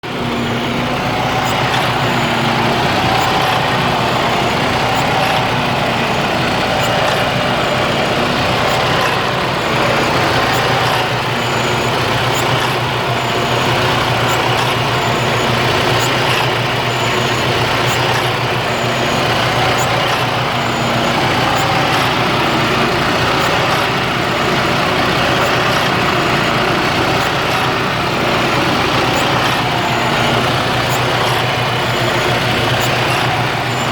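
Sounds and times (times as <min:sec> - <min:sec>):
diesel engine idling roughly: 0:00.0 - 0:33.9
faint regular ticking: 0:00.0 - 0:33.9.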